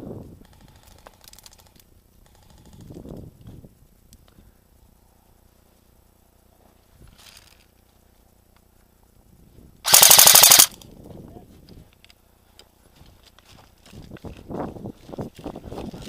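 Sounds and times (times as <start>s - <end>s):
airsoft gun burst firing: 9.8s - 10.8s.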